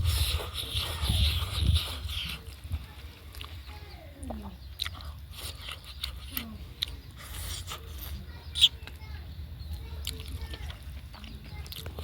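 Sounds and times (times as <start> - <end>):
person chewing: 0.0 - 2.6, 4.7 - 8.7, 10.0 - 12.0.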